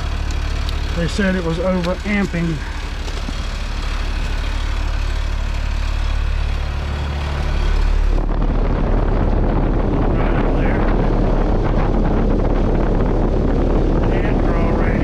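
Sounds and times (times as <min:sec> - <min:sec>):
condenser fan air rush: 0:00.0 - 0:15.0
low hum: 0:00.0 - 0:15.0.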